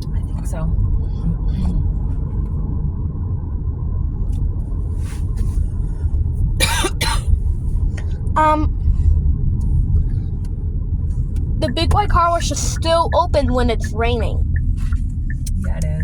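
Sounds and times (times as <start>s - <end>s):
car road rumble: 0.0s - 16.0s
person coughing: 6.6s - 7.3s.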